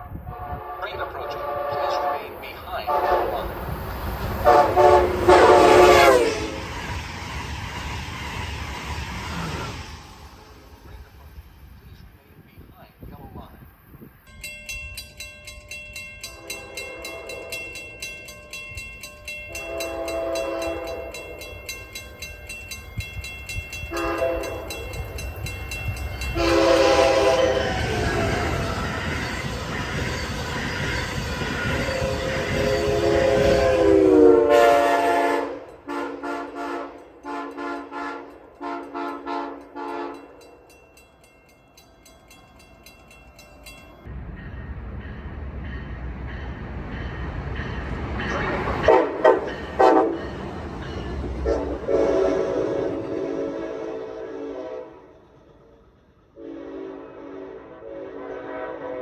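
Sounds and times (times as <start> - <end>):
train air horn blasts: 0.0 - 3.6, 4.4 - 6.8, 16.4 - 17.8, 19.5 - 21.4, 23.9 - 24.9, 26.3 - 29.2, 31.6 - 40.3, 48.8 - 50.3, 51.4 - 55.2, 56.4 - 59.0
train rushing past: 0.0 - 59.0.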